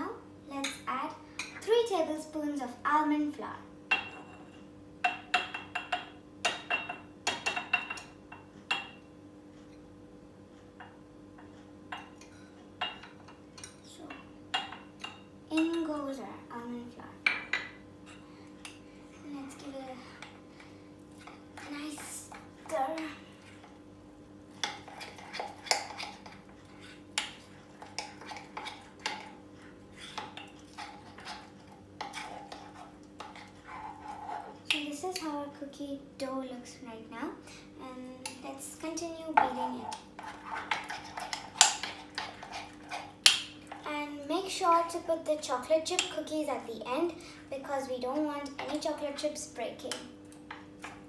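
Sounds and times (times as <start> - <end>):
spoon stirring dough in bowl: 24.5 - 35.3, 39.4 - 43.9.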